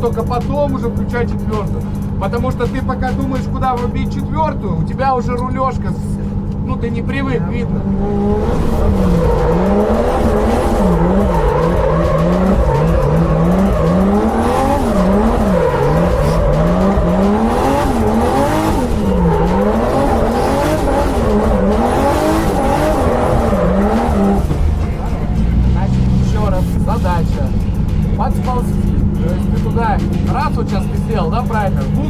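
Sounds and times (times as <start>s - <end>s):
car engine revving: 0.0s - 32.0s
tyres squealing: 7.3s - 32.0s.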